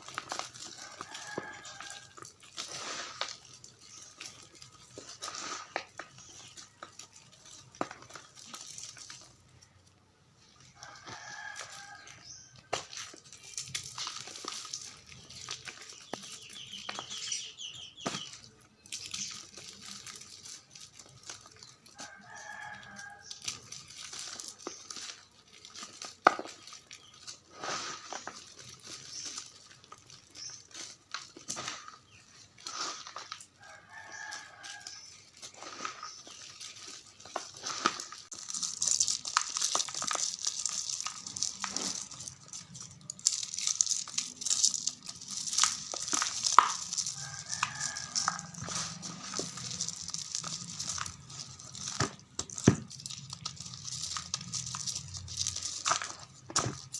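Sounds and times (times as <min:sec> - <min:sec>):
chalk crumbling with dry crunching: 0:00.0 - 0:56.9.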